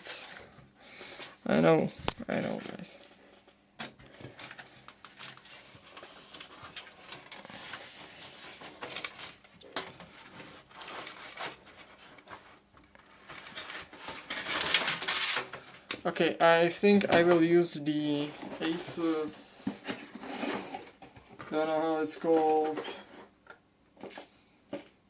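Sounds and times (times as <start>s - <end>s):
cables rustling: 16.8s - 24.9s.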